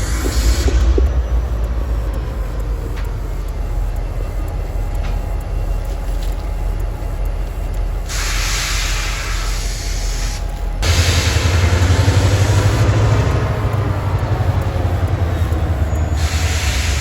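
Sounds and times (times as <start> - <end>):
freight train rumbling: 0.0 - 17.0
loud hiss: 8.1 - 12.8, 16.1 - 17.0.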